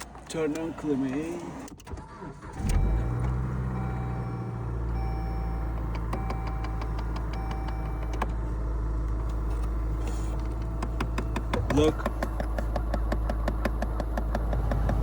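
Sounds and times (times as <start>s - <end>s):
car climate control hum: 2.7s - 15.0s
sharp clicks behind dashboard: 5.7s - 8.4s, 10.4s - 15.0s.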